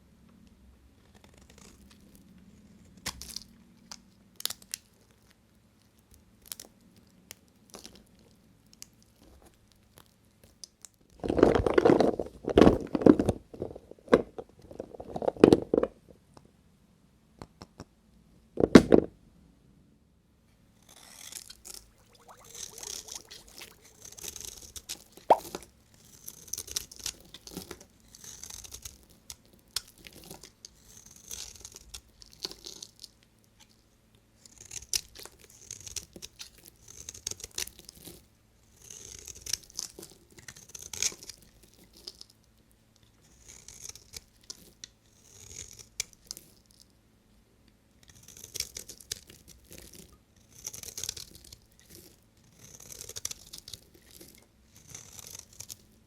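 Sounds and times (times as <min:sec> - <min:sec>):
knife cutting dry soap: 0:20.8 - 0:33.8, 0:34.4 - 0:42.3, 0:43.2 - 0:46.7, 0:48.0 - 0:55.9.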